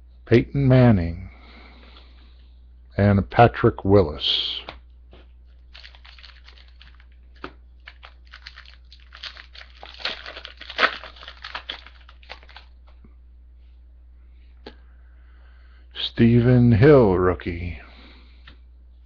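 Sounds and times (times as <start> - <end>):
wrapper tearing and crinkling: 5.5 - 12.8.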